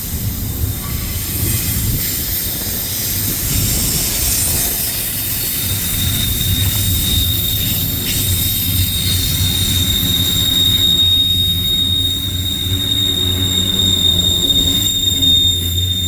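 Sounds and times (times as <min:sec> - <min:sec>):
freight train wheels rumbling: 0:00.0 - 0:16.0
high-pitched wheel squeal: 0:04.2 - 0:16.0.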